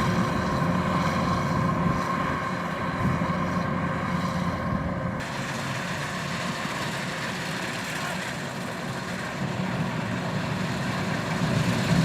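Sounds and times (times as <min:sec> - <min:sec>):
diesel engine drone: 0:00.0 - 0:12.0.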